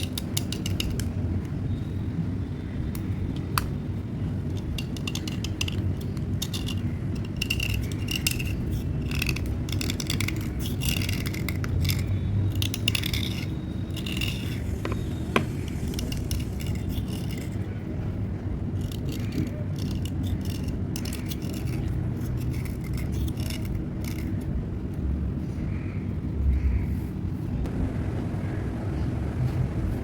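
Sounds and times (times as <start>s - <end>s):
pencils scraping and rattling: 0.0s - 2.0s, 2.6s - 17.8s, 18.7s - 25.0s
steady low hum: 0.0s - 30.0s.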